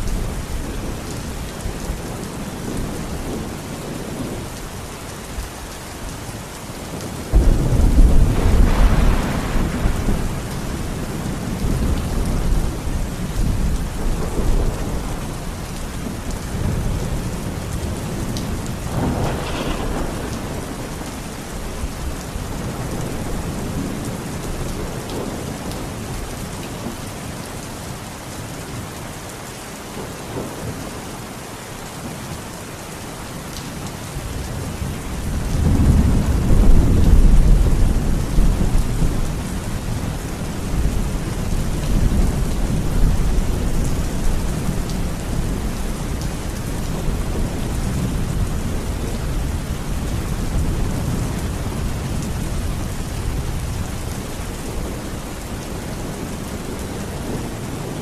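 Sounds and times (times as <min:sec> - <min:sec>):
heavy rain falling: 0:00.0 - 0:58.0
thunderclap with low rumble: 0:06.9 - 0:26.3, 0:34.2 - 0:58.0.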